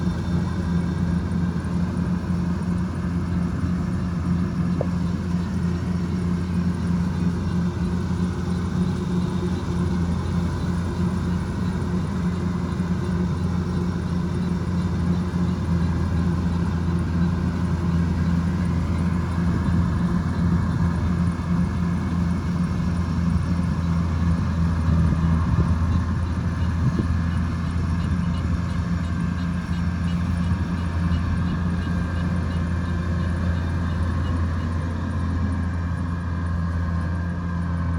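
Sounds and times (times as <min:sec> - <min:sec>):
combine harvester engine hum: 0:00.0 - 0:37.9.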